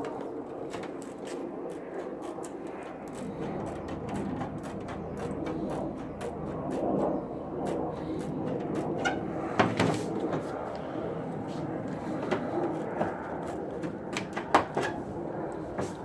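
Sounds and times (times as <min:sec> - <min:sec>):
metal scraping: 0:01.8 - 0:10.6.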